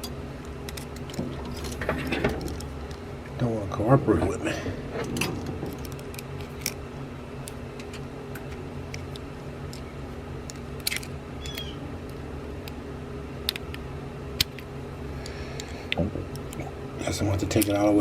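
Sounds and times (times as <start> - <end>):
small parts clicking and tapping: 0.0 - 3.0, 5.0 - 6.8, 7.4 - 12.8, 13.4 - 13.8, 14.4 - 16.7, 17.3 - 17.9
steady low hum: 0.0 - 18.0.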